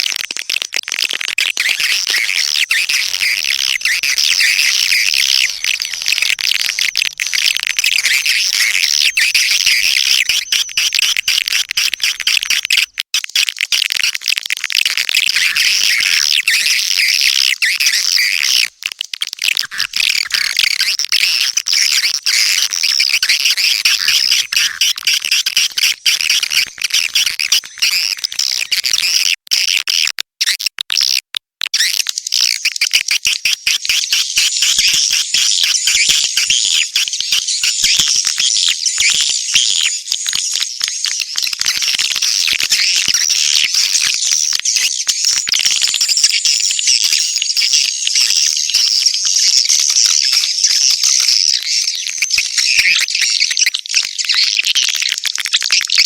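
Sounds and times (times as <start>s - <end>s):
swiftlet chirps and twitters: 1.6s - 12.9s, 31.8s - 54.7s.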